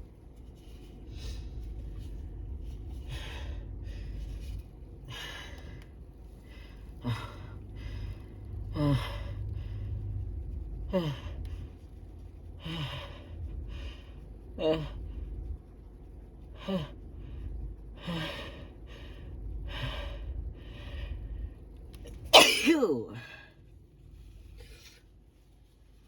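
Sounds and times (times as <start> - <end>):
person gasping before a sneeze: 22.3 - 23.4.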